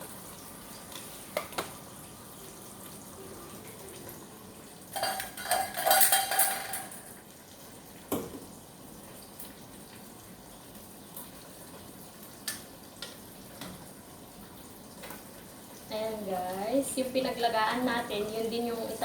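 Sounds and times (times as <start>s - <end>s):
metal pots clattering: 4.9s - 7.2s.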